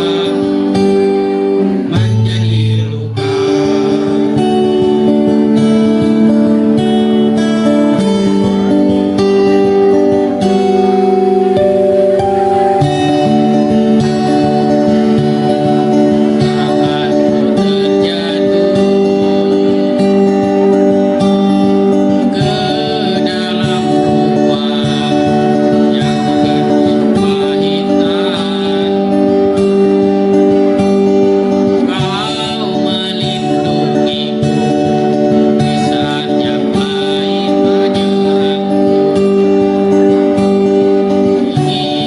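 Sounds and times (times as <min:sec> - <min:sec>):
guitar playing sustained chords: 0:00.0 - 0:42.0
person singing: 0:00.0 - 0:42.0.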